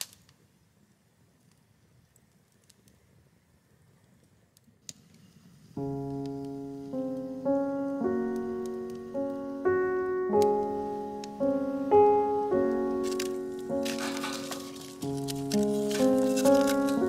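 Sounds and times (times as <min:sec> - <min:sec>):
gentle keyboard melody: 0:05.8 - 0:17.0.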